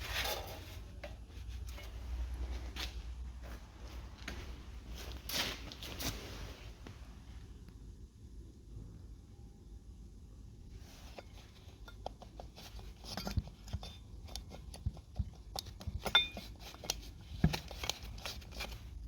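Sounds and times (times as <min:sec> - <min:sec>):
faint low hum: 0:00.0 - 0:19.0
hard objects clicking and knocking: 0:11.2 - 0:18.7.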